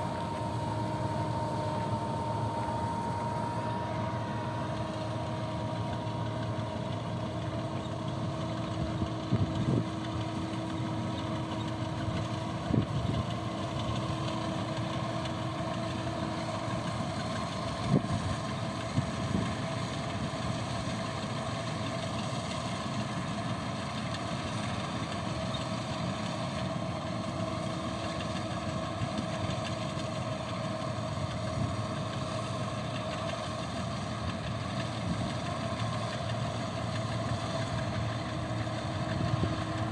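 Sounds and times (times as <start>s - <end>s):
motor drone: 0.0s - 19.8s.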